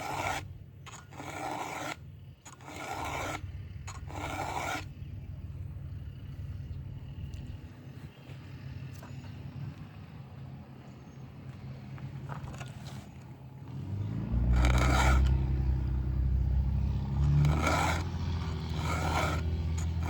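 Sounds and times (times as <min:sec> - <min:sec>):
file rasping on chainsaw chain: 0:00.0 - 0:04.9, 0:14.1 - 0:20.0
low engine rumble: 0:03.4 - 0:20.0.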